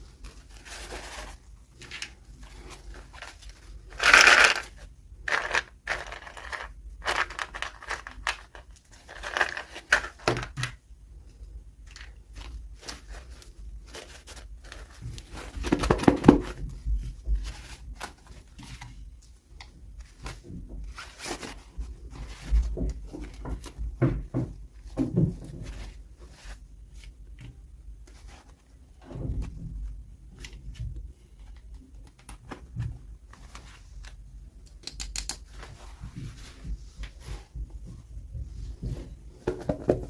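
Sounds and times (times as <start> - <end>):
packaging rustling and tearing: 0.2 - 10.6.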